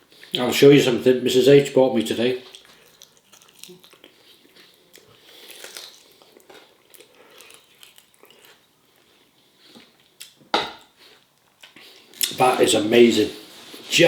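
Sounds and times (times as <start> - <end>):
person chewing: 2.4 - 12.4.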